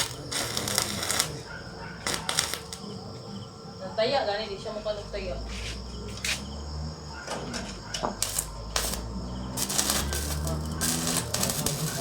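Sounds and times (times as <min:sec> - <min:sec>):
welding arc crackling: 0:00.0 - 0:01.4, 0:02.0 - 0:03.0, 0:08.2 - 0:12.0.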